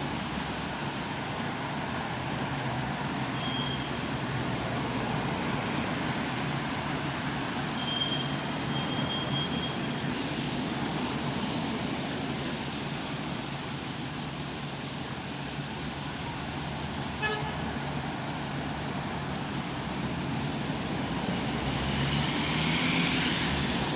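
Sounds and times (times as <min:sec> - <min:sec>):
car tyres on wet road: 0:00.0 - 0:23.9
rain hissing: 0:00.0 - 0:23.9
car horn toot: 0:17.2 - 0:17.5
car swishing past: 0:21.3 - 0:23.9.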